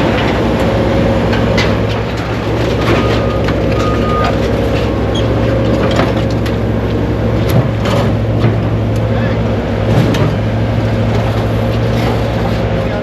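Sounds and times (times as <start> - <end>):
metal clanks and knocks: 0.0 - 8.9
heavy equipment engine running: 0.0 - 13.0.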